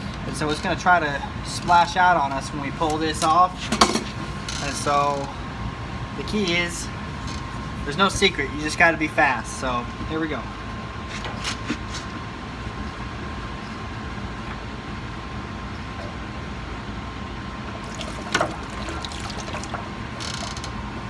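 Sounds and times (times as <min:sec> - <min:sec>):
water gushing from drain: 0:17.8 - 0:20.2.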